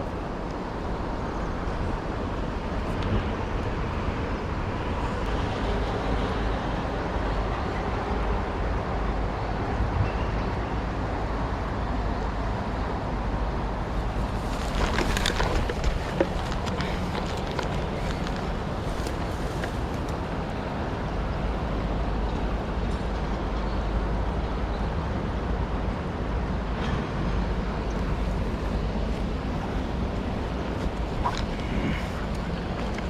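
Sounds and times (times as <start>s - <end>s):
rustling and clicks: 13.9s - 20.4s, 28.0s - 33.0s.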